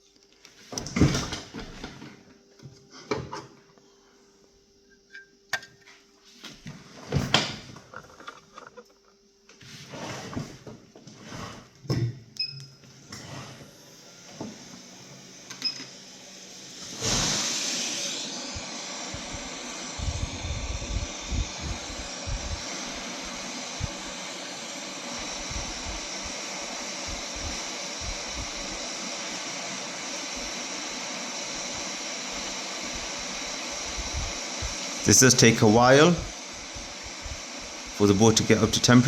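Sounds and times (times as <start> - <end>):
hot air station fan hiss: 13.1 - 39.0.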